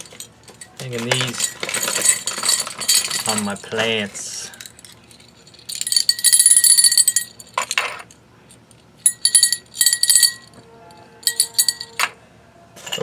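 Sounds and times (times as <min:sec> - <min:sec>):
small cowbells jingling: 0:00.0 - 0:03.8, 0:04.6 - 0:07.6, 0:09.0 - 0:12.1.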